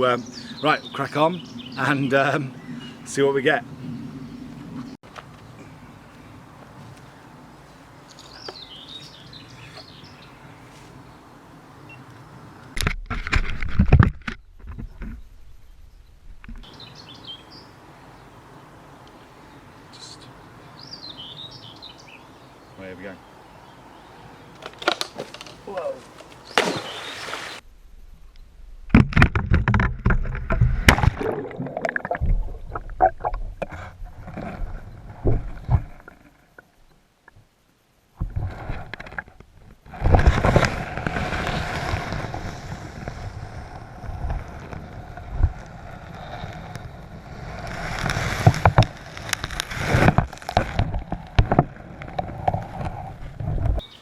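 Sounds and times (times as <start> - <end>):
knocks and thumps: 28.9 - 36.2
water sloshing and gurgling: 28.9 - 36.7.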